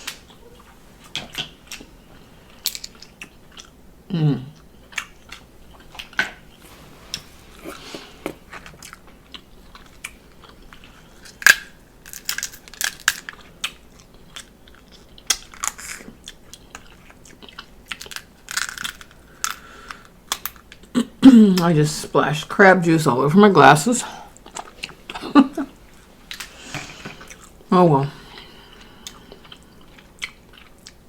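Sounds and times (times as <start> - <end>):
chewing: 0.0 - 3.8, 4.5 - 11.6, 12.2 - 20.9, 24.3 - 27.7, 28.3 - 31.0
crab shells cracking: 2.6 - 3.8, 8.9 - 20.9.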